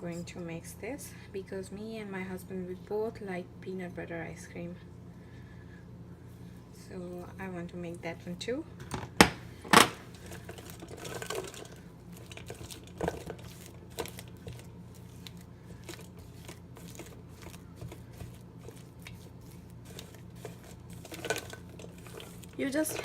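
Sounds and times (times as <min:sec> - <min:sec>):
utensil scraping a bowl: 0:10.4 - 0:23.0.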